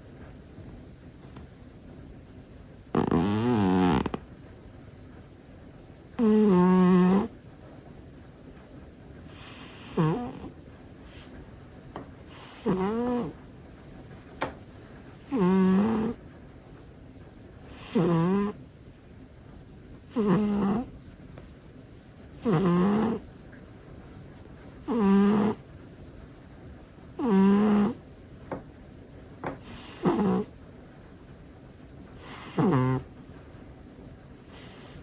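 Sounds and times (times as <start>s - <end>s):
cat snoring: 2.9s - 4.3s, 6.2s - 7.4s, 9.3s - 11.4s, 12.3s - 13.4s, 15.3s - 16.2s, 17.7s - 18.6s, 20.1s - 20.9s, 22.4s - 23.3s, 24.8s - 25.6s, 27.2s - 28.0s, 29.6s - 30.5s, 32.2s - 33.1s, 34.4s - 35.0s.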